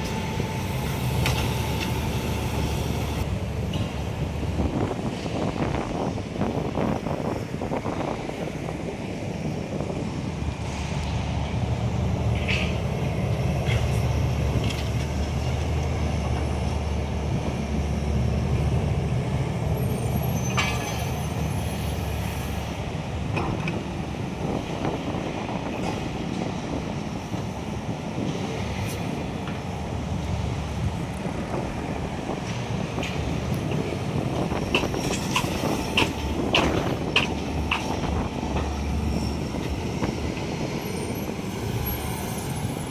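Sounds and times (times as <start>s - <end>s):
excavator diesel engine running: 0.0s - 4.0s.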